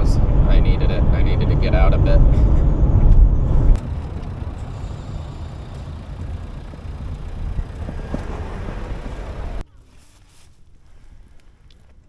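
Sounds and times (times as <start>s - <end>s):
car road noise rumble: 0.0s - 9.6s.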